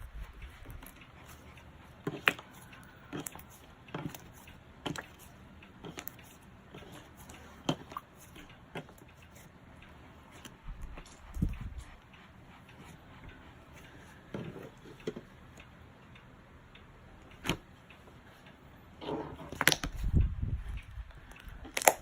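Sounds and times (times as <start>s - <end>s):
slime squishing: 19.0s - 20.1s, 21.6s - 22.0s
slime clicks and pops: 21.7s - 22.0s.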